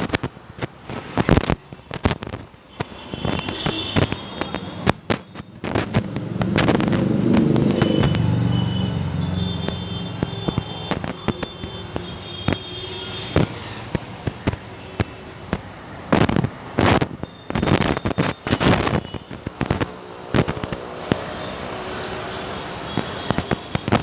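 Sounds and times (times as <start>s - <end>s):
firecrackers banging: 0.0s - 21.7s, 22.4s - 24.0s
high firework whistling: 16.8s - 19.9s, 20.5s - 24.0s.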